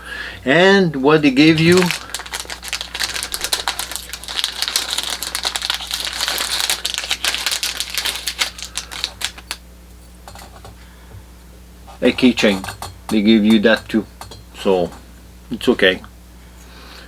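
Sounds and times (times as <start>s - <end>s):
packaging clicking and crinkling: 1.4s - 9.6s.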